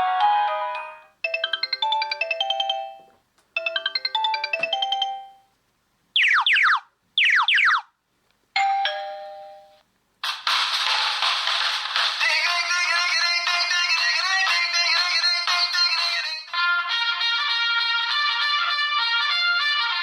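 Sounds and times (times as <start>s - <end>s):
electronic ringtone notes: 0.0s - 5.5s.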